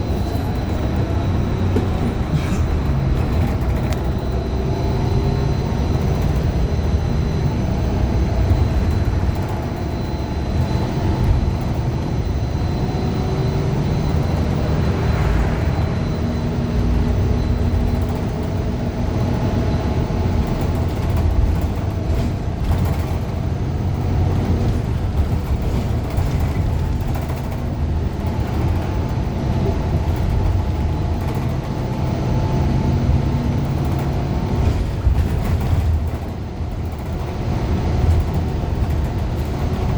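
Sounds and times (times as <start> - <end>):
bus engine rumbling: 0.0 - 39.9.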